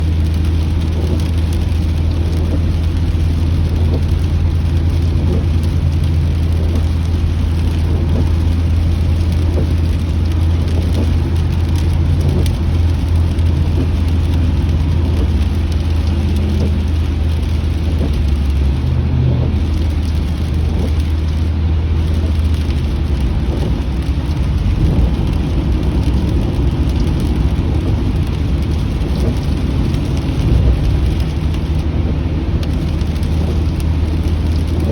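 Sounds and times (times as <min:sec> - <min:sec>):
car engine and road noise drone: 0:00.0 - 0:34.9
rain hissing on car: 0:00.0 - 0:34.9.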